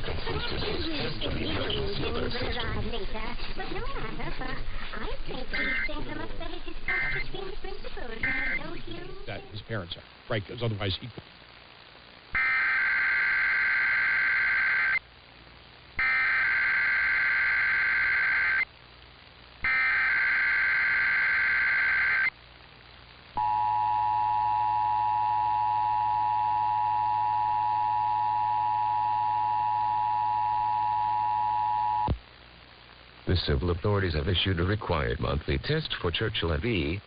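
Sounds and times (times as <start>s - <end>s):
warbling digital data tones: 4.8s - 9.4s, 12.4s - 15.0s, 16.0s - 18.7s, 19.6s - 22.3s
two-tone attention signal: 8.2s - 8.6s.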